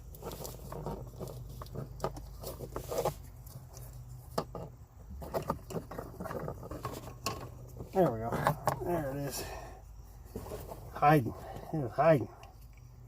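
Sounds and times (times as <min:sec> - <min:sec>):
hand rummaging clicks and rustles: 0:10.2 - 0:11.7.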